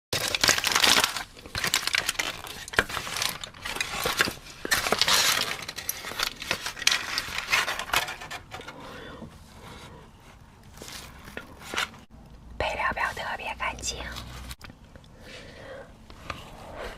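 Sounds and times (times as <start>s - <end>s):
crisp crackling and crunching: 0.1s - 8.5s.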